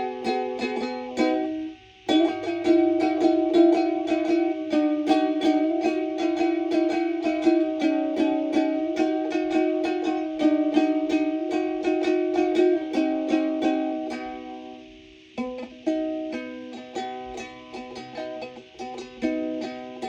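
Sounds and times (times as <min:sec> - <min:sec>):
plucked string instrument melody: 0:00.0 - 0:20.0.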